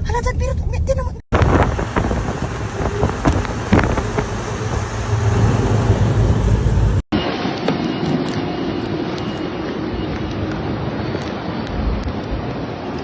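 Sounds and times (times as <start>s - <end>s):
vehicle low rumble: 1.3s - 7.7s
road and wind noise: 1.3s - 13.0s
sharp knocks: 1.4s - 7.0s.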